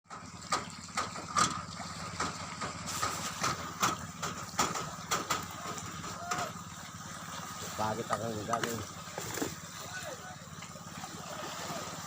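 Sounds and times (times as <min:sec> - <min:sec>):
engine idling: 0:00.1 - 0:12.0
sharp knocks: 0:02.2 - 0:06.5.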